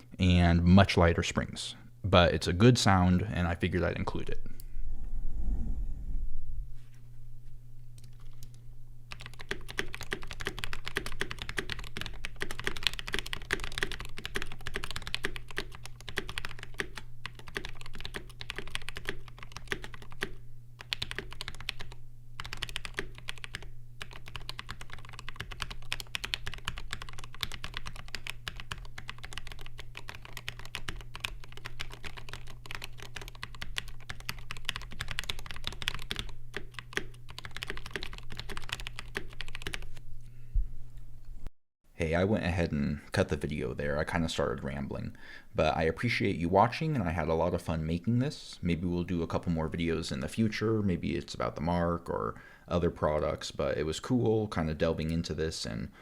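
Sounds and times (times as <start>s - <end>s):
fast mechanical keyboard typing: 8.0s - 39.9s.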